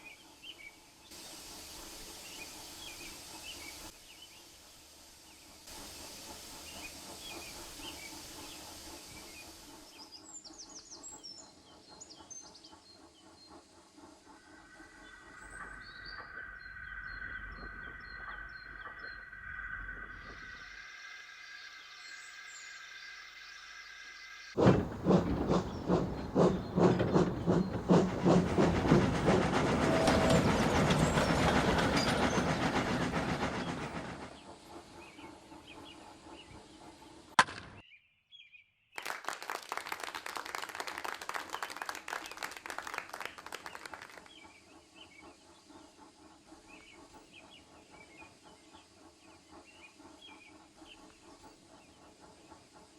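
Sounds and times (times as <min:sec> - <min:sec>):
steam locomotive chuffing: 0:00.0 - 0:19.1, 0:24.6 - 0:37.4, 0:39.9 - 0:52.9
birdsong: 0:21.5 - 0:38.8, 0:43.2 - 0:52.9
wheels clattering over rail joints: 0:24.6 - 0:34.4.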